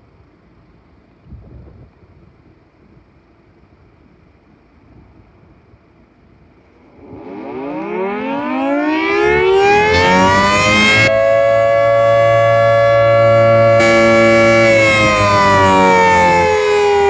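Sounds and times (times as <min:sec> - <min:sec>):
siren winding up: 0:07.0 - 0:17.0.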